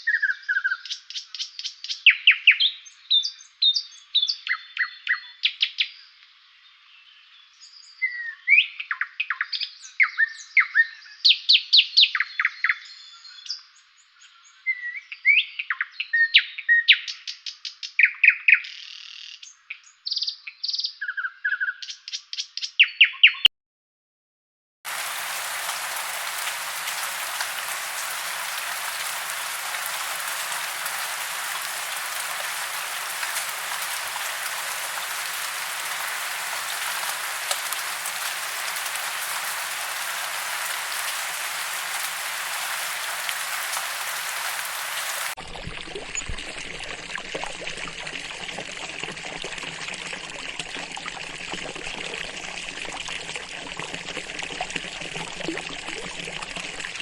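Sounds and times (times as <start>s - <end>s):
deeper running water: 24.9s - 57.0s
running water hiss: 24.9s - 57.0s.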